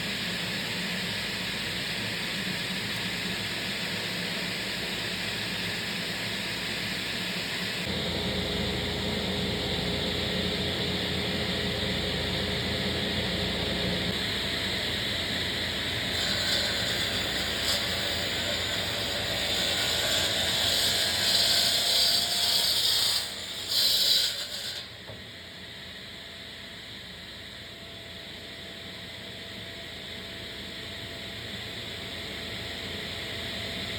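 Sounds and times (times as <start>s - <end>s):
power saw cutting wood: 16.0s - 24.9s.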